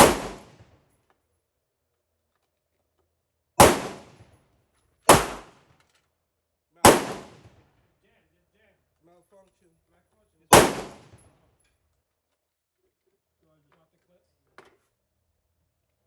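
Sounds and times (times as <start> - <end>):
pistol shots: 0.0 - 0.6, 3.6 - 4.2, 5.1 - 5.6, 6.8 - 7.5, 10.5 - 11.2.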